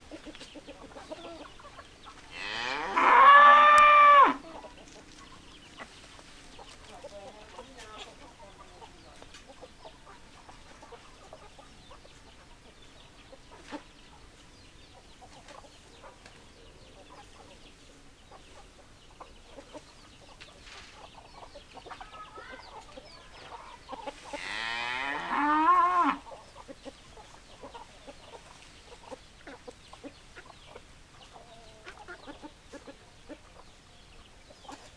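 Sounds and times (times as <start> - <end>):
rooster crowing: 2.6 - 4.4.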